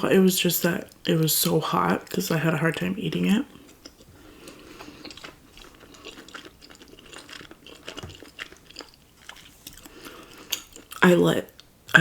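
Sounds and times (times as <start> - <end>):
person chewing food: 3.1 - 11.0.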